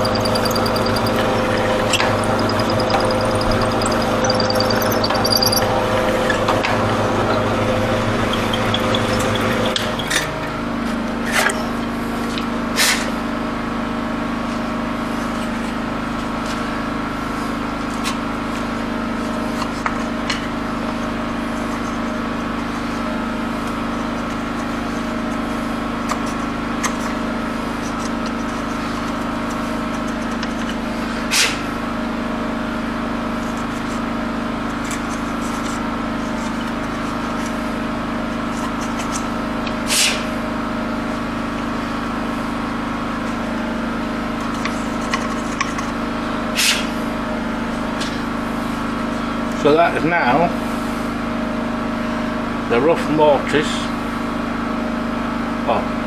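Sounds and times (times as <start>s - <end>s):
mortise machine motor cutting wood: 0.0s - 10.4s.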